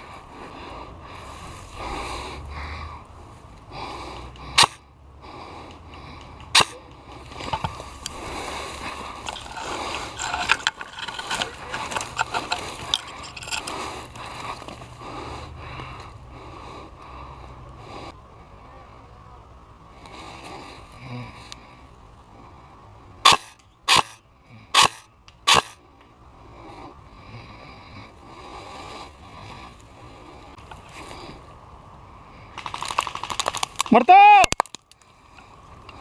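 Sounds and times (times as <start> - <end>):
close breathing: 0.0 - 19.2, 19.8 - 23.3, 24.3 - 32.8, 35.0 - 36.0
airsoft gun shots: 4.6 - 4.8, 6.5 - 6.8, 23.2 - 24.2, 24.8 - 25.8
gear rustling: 6.6 - 15.0
light clicks and crackles: 8.8 - 14.9, 32.6 - 33.9, 34.5 - 36.0.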